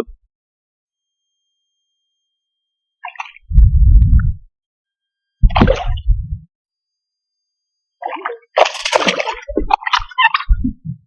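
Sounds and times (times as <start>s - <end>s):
fish splashing: 8.0s - 10.5s.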